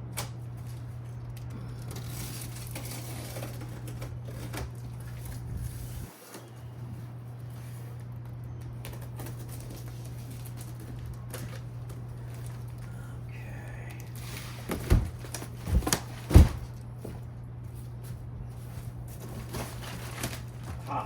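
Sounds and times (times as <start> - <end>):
steady low hum: 0.0 - 21.0
loud thumps on box: 14.7 - 16.7.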